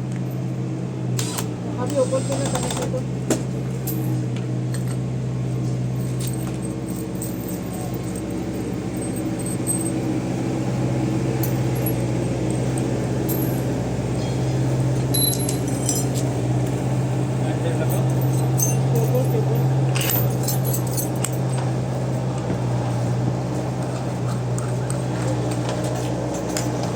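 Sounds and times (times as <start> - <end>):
low mechanical hum: 0.0 - 26.9
metallic clinking and jingling: 3.8 - 16.8, 17.5 - 22.2, 26.3 - 26.9.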